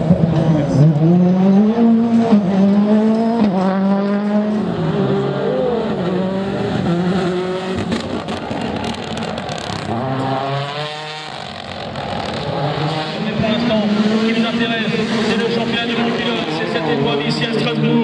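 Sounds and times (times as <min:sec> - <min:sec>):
rally car engine accelerating: 0:00.0 - 0:18.0.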